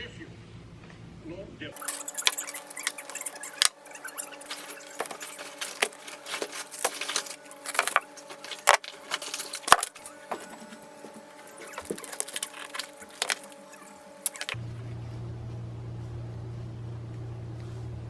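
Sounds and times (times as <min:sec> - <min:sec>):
small hard objects clinking: 0:01.8 - 0:14.6.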